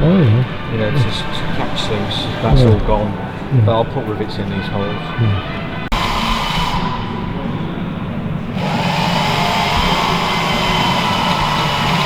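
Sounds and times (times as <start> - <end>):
motor-driven machine whirring: 6.0 - 12.0.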